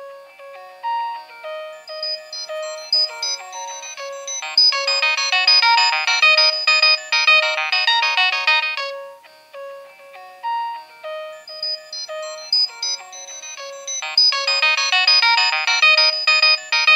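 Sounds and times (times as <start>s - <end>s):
polyphonic ringtone melody: 1.7s - 9.1s, 11.5s - 16.9s.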